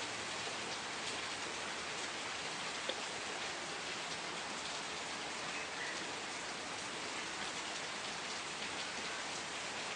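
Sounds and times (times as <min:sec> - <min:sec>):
steady rain falling: 0:00.0 - 0:09.9.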